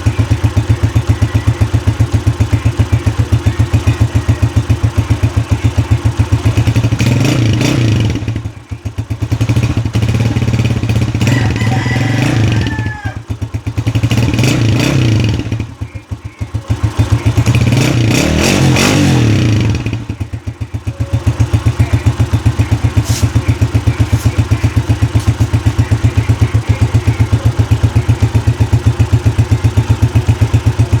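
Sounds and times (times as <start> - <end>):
motorcycle engine idling and revving: 0.0 - 31.0.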